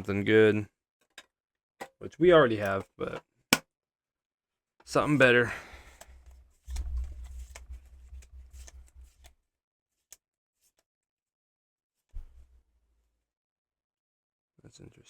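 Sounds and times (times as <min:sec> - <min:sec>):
cards rustling: 0:04.9 - 0:09.3.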